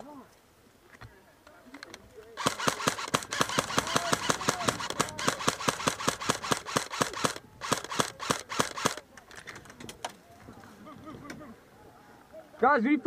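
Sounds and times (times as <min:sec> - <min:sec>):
airsoft gun firing full auto: 0:02.4 - 0:09.0.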